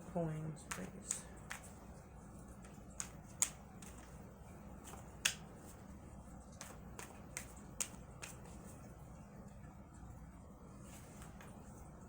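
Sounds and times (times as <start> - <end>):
cards being shuffled: 0.6 - 1.9, 2.5 - 8.8, 10.9 - 11.7
sharp card snaps: 3.0 - 4.1, 4.9 - 5.5.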